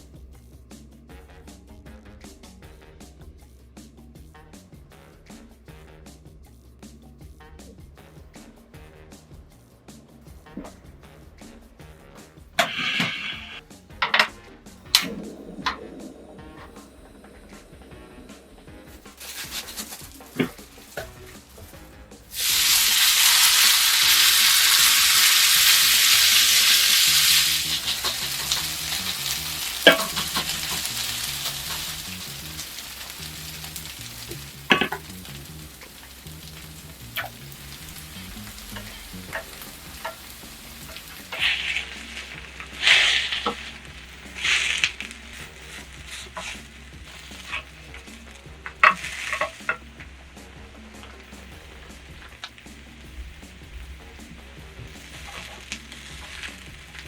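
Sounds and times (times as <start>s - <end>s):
batter sizzling in hot oil: 11.8s - 57.0s.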